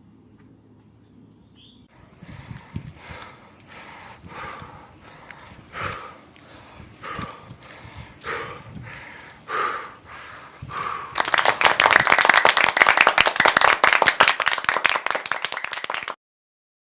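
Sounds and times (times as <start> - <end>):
breathy puffs: 1.9 - 11.4
dense crackle of sharp clicks: 2.1 - 16.0.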